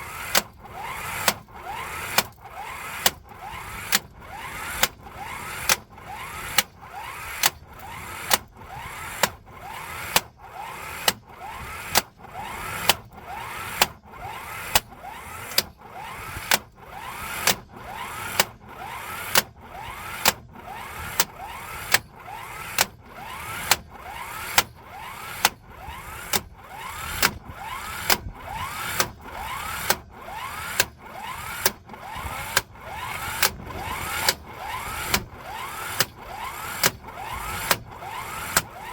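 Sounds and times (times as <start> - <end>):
impact wrench hammering: 0.0 - 5.0, 30.6 - 38.9.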